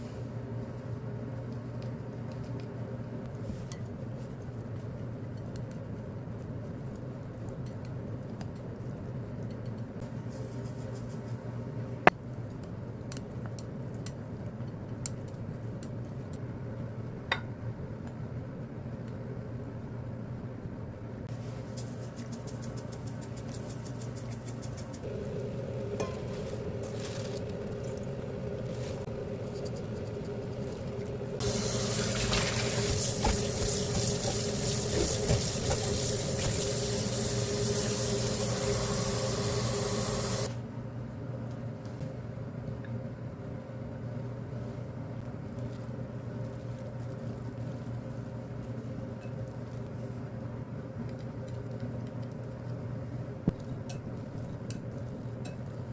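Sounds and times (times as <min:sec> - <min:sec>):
steady low hum: 0:00.0 - 0:55.9
tap water running into sink: 0:31.4 - 0:40.5.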